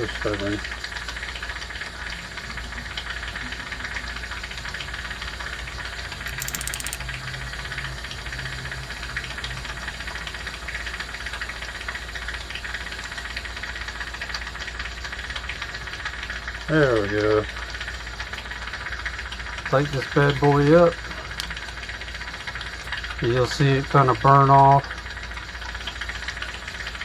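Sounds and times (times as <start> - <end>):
fine clicks: 6.2 - 7.0.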